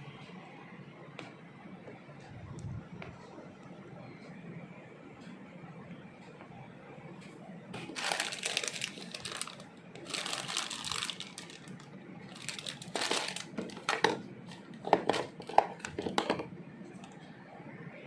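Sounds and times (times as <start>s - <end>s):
plastic packaging crinkling: 7.8s - 16.5s.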